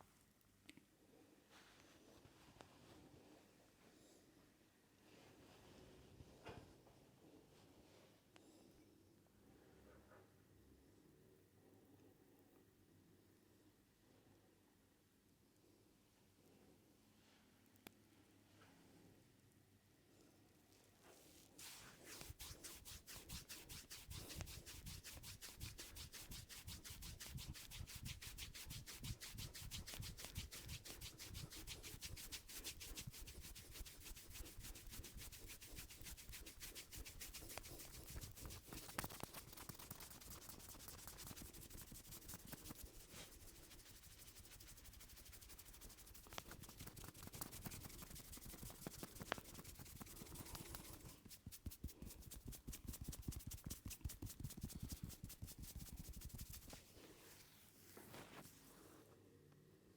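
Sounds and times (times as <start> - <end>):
hands rubbing scalp and hair: 21.1 - 59.0.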